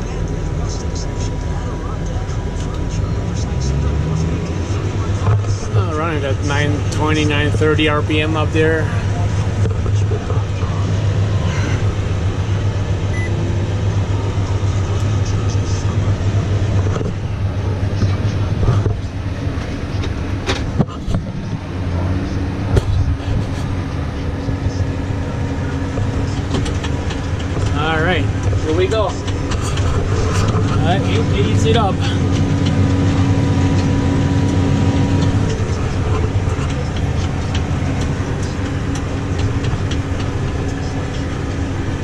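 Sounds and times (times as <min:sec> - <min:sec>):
tractor and baler drone: 0:00.0 - 0:42.0
machinery clicks and rattles: 0:25.6 - 0:42.0.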